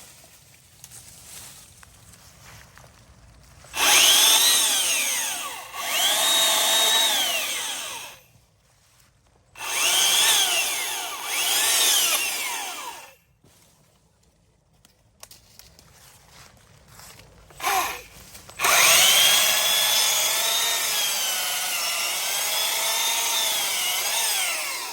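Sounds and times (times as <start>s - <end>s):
electric chainsaw cutting wood: 3.8s - 8.3s, 9.6s - 13.2s, 17.6s - 24.9s.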